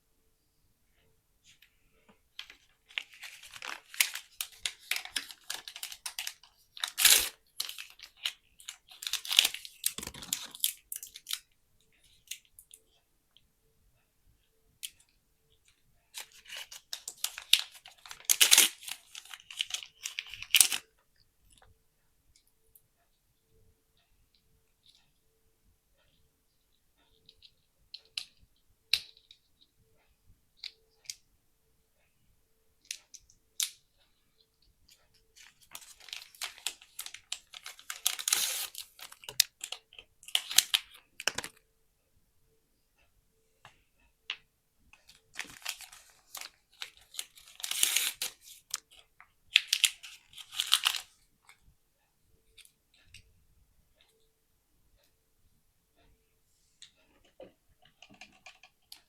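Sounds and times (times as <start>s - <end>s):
plastic pieces clicking: 2.4s - 11.4s, 35.4s - 41.6s, 57.3s - 59.0s
plastic wrap tearing and crinkling: 2.9s - 11.4s, 16.2s - 20.8s, 35.4s - 39.3s, 45.4s - 48.7s.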